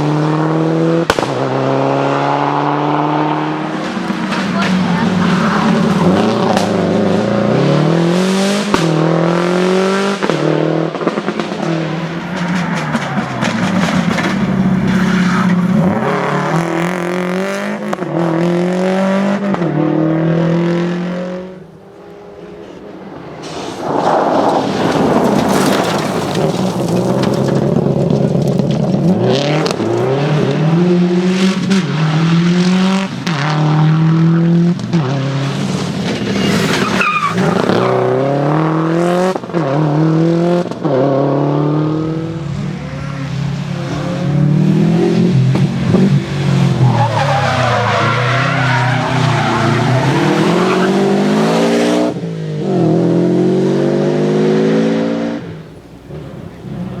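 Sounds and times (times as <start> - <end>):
rally car engine revving: 0.0 - 57.0
tyres skidding: 2.4 - 8.3, 11.1 - 19.7, 21.8 - 33.4, 34.8 - 38.8, 42.1 - 52.2, 52.8 - 57.0.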